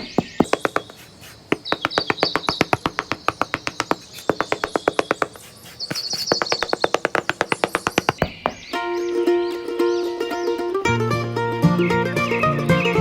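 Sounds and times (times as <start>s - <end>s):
rapid sharp taps: 0.0s - 8.7s
birds chirping: 0.0s - 9.3s.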